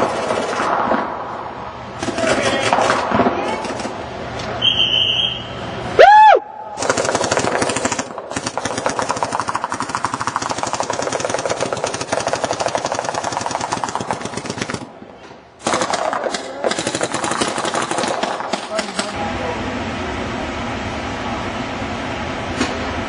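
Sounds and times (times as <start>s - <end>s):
marker guns firing rapid shots: 0.0s - 1.4s, 2.0s - 4.1s, 6.8s - 19.2s.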